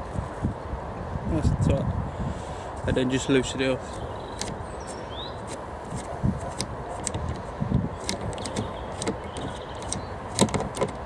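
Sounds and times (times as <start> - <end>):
small tool clicks: 8.0 - 11.0.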